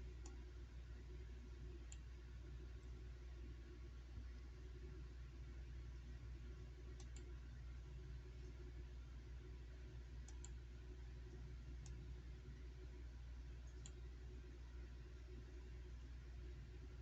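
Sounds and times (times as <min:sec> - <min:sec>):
faint irregular clicks: 0:00.0 - 0:00.5, 0:01.6 - 0:03.1, 0:06.8 - 0:08.8, 0:09.8 - 0:14.4
ceiling fan humming: 0:00.0 - 0:17.0.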